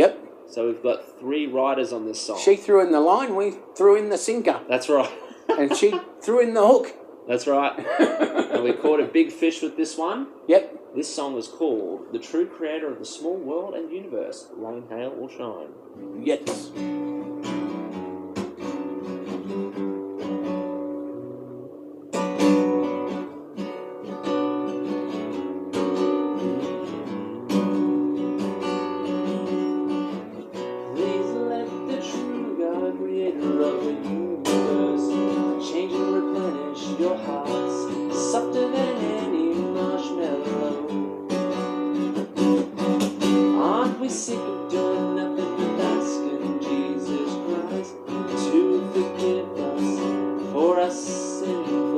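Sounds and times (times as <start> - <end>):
strummed guitar chords: 15.8 - 51.9.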